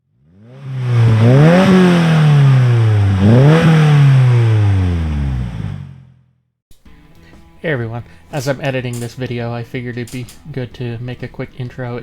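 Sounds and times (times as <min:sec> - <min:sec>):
car engine revving: 0:00.0 - 0:06.2.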